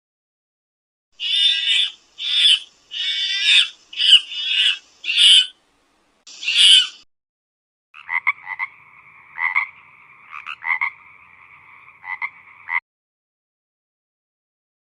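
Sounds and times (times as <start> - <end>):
harsh raspy animal calls: 1.2 - 5.5, 6.3 - 7.0, 8.0 - 12.8.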